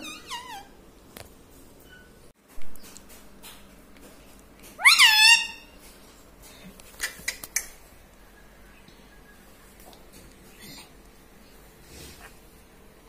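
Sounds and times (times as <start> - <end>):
parrot meow-like call: 4.8 - 5.6.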